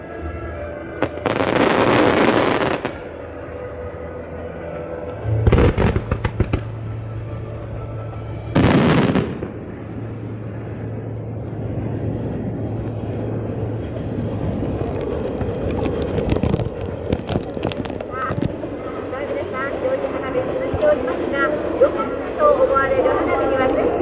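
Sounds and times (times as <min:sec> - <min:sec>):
firework shells bursting: 0:13.9 - 0:18.7.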